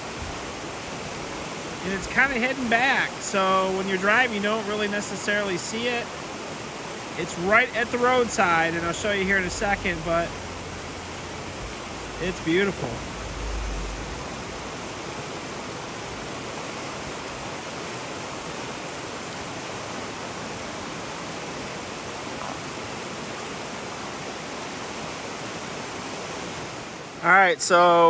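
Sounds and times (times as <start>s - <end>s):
waterfall and stream rushing: 0.0s - 28.0s
brief low rumble: 11.4s - 14.9s.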